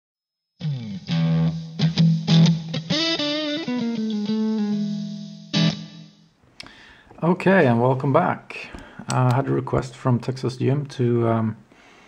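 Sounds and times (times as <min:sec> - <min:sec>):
electric guitar playing: 0:00.6 - 0:06.4.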